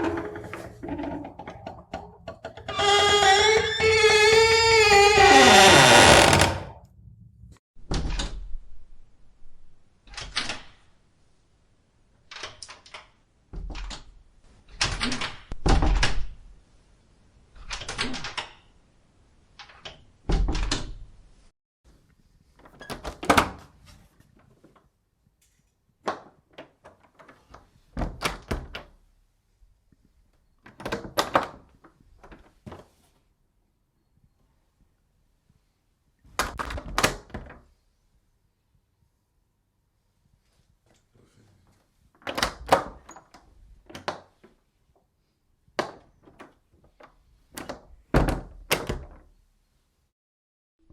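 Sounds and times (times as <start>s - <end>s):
door opening and shutting: 0.0s - 6.8s.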